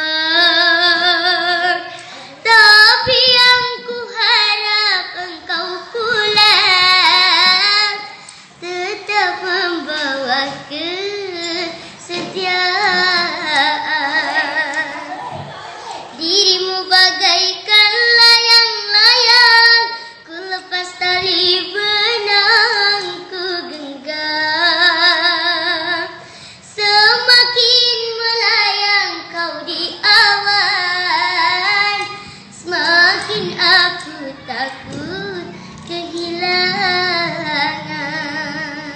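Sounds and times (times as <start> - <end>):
child singing: 0.0 - 38.9
child breathing between phrases: 26.2 - 26.6, 32.2 - 32.5.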